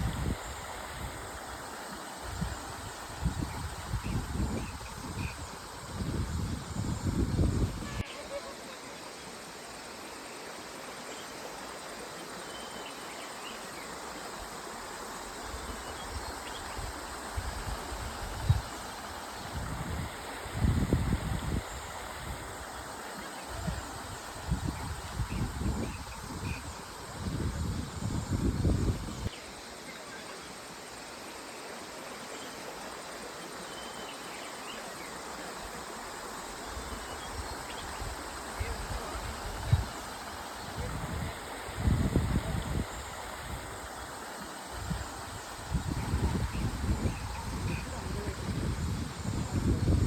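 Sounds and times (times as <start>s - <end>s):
river water rushing: 0.0s - 3.9s, 8.2s - 24.6s, 29.3s - 48.5s
high insect drone: 0.0s - 50.0s
wind bumps on microphone: 2.3s - 8.0s, 19.5s - 22.5s, 23.5s - 29.3s, 40.7s - 43.7s, 44.8s - 50.0s.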